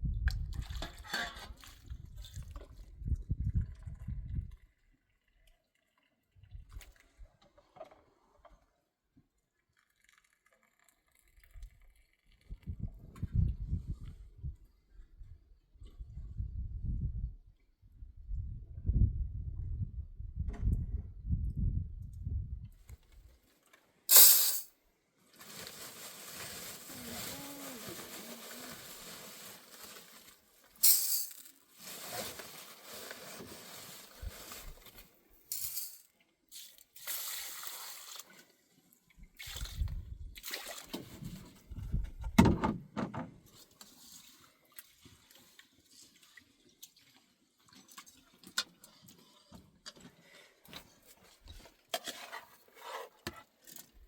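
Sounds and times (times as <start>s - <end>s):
water pouring and splashing: 0.5s - 7.3s, 9.6s - 12.6s, 25.3s - 38.6s, 39.2s - 41.6s, 43.6s - 50.3s.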